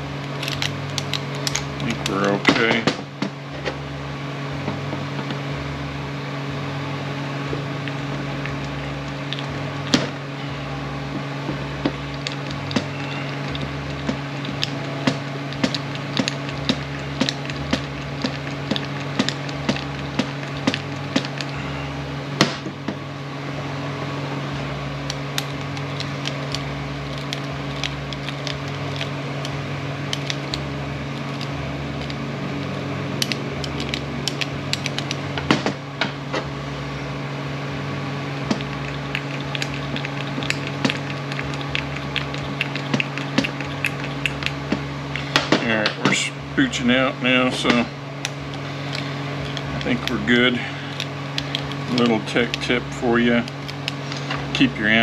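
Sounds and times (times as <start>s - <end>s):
steady low hum: 0.0s - 55.0s.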